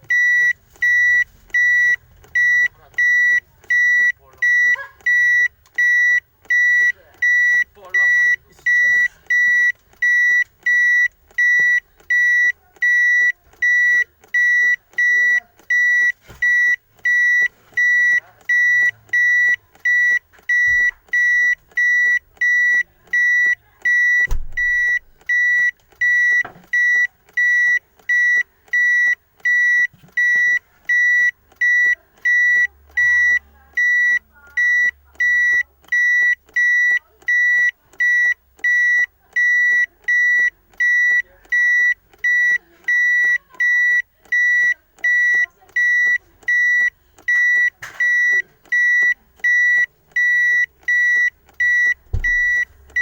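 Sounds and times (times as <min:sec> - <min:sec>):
reverse warning beeper: 0:00.1 - 0:53.0
low thump: 0:24.3 - 0:24.8, 0:52.1 - 0:52.5.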